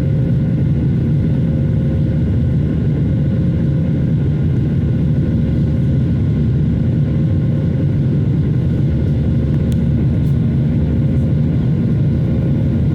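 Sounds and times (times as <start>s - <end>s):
airplane cabin engine roar: 0.0s - 12.9s.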